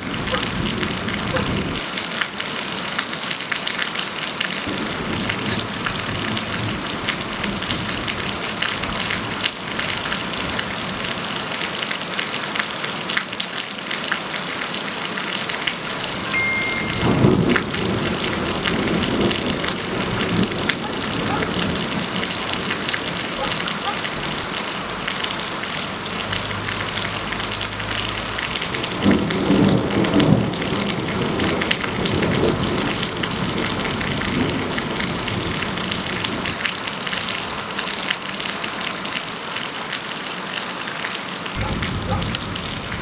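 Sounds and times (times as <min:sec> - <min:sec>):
heavy rain falling: 0:00.0 - 0:43.0
raindrops ticking on hard surfaces: 0:00.0 - 0:43.0
low thunder rumble: 0:04.7 - 0:10.7, 0:17.0 - 0:25.1, 0:26.2 - 0:36.6, 0:41.6 - 0:43.0.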